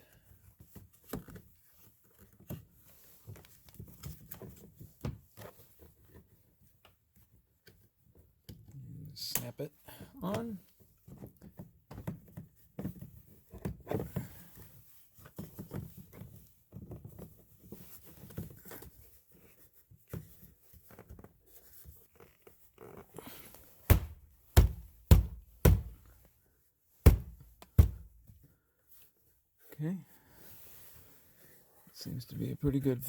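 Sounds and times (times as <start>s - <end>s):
sharp knocks of plastic snapping: 23.9s - 26.1s, 27.1s - 28.2s.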